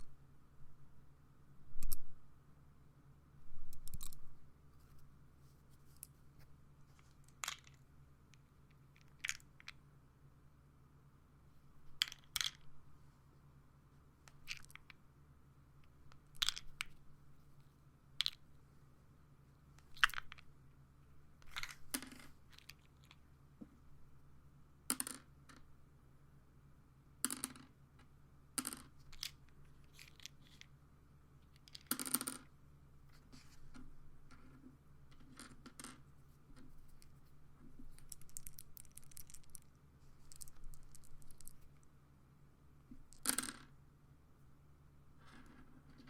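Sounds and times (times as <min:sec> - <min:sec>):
pills rattling in bottle: 0:29.1 - 0:30.7, 0:37.9 - 0:41.9.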